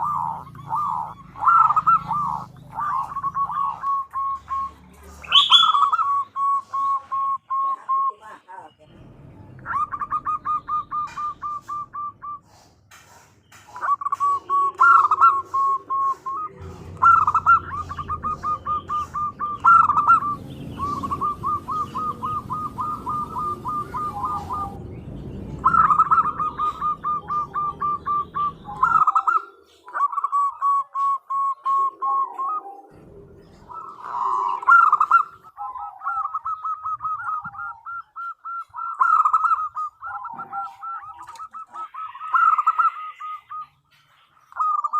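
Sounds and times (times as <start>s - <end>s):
dove cooing: 0.0s - 8.6s, 9.6s - 12.7s, 13.6s - 25.0s, 25.6s - 44.9s
low background rumble: 8.7s - 12.9s, 16.3s - 29.1s, 32.9s - 35.6s.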